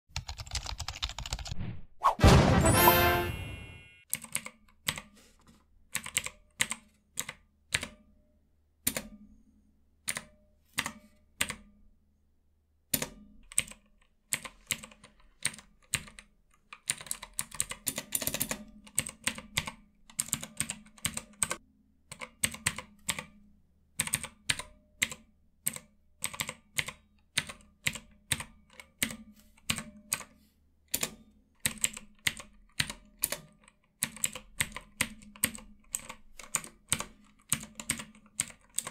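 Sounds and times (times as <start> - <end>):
clicky keyboard keys pressed: 0.2 - 1.6.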